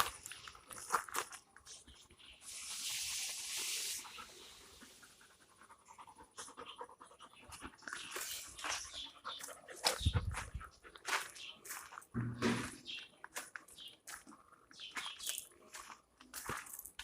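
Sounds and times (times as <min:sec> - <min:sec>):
long hiss: 0:02.4 - 0:05.2
dog panting: 0:04.3 - 0:11.1.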